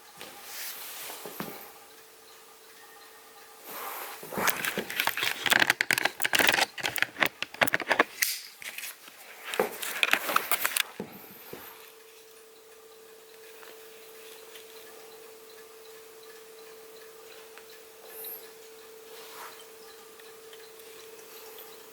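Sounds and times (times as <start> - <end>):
faint steady hum: 0.0 - 21.9
rapid clicks and scrapes: 4.3 - 10.9.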